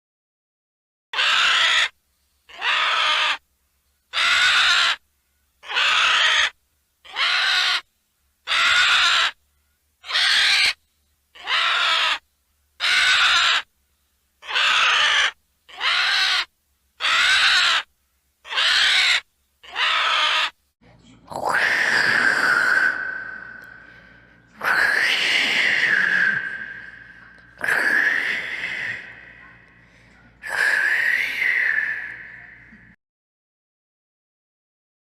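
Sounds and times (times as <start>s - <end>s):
high dinosaur cry: 1.2s - 1.9s, 2.5s - 3.4s, 4.1s - 5.0s, 5.6s - 7.8s, 8.5s - 9.4s, 10.0s - 10.8s, 11.4s - 12.2s, 12.8s - 13.7s, 14.4s - 17.9s, 18.5s - 20.6s, 21.3s - 23.9s, 24.6s - 29.3s, 30.4s - 32.3s.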